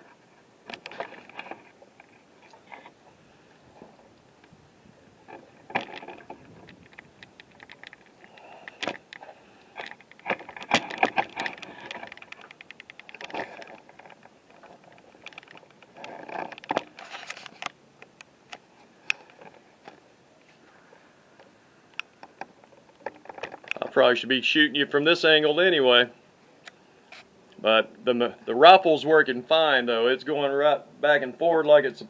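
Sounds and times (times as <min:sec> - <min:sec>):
camera handling noise: 0:05.3 - 0:20.0.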